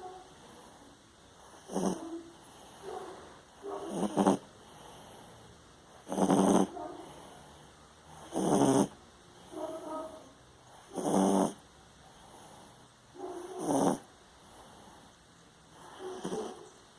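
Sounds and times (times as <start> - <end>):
quiet breathing: 0.0 - 16.9
pet snoring: 1.4 - 5.3, 5.9 - 9.0, 9.7 - 11.6, 12.3 - 15.0, 15.8 - 16.7.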